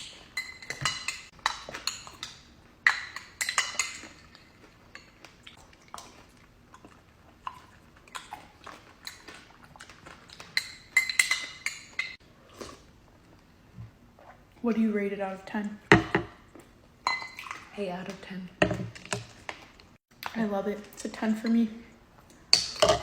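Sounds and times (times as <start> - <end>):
cutlery and dishes clinking: 0.0 - 5.2.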